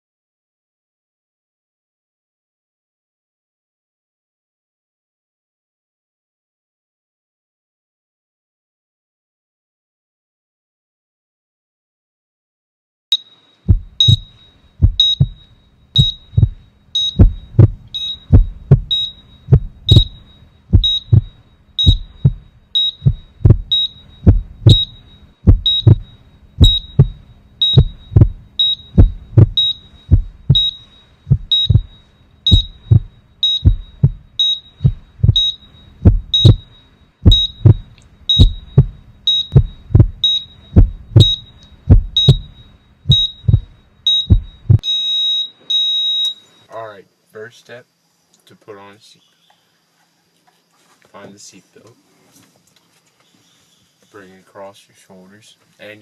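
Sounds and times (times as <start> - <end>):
short high beeps: 13.1 - 46.7
low thuds: 13.7 - 44.8.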